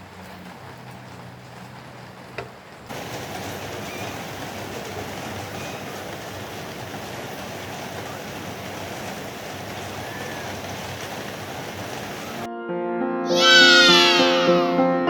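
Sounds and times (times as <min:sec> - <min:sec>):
steady rushing noise: 0:02.9 - 0:12.5
music with held notes: 0:12.5 - 0:15.0.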